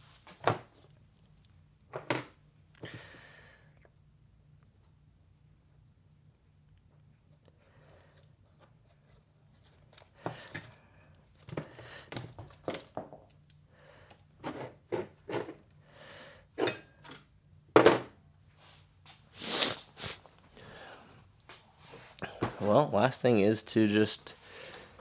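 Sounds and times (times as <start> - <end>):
tools knocking and thunking: 16.6 - 18.1.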